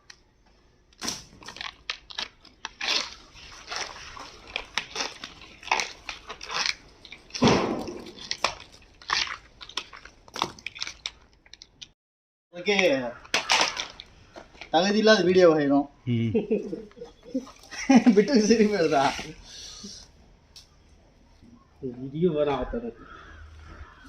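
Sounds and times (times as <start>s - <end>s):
cable crunching and snapping: 0.0s - 12.0s, 12.7s - 14.7s.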